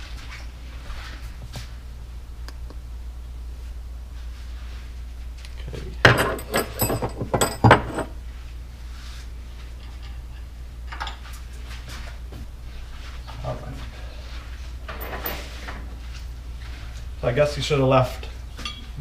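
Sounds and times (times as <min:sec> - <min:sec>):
low steady hum: 0:00.0 - 0:19.0
metal tools clinking: 0:06.0 - 0:08.2, 0:14.9 - 0:15.8.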